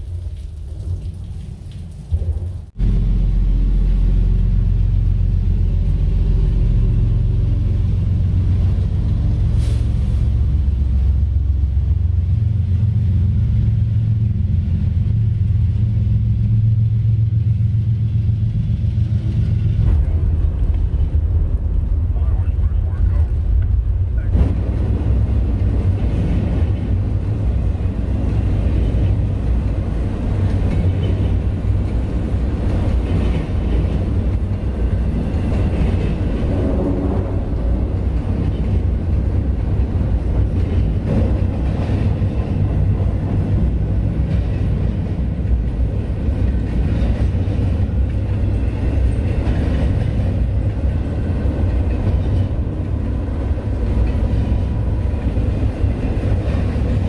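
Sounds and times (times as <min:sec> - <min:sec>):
freight train rumbling overhead: 0:02.1 - 0:57.0.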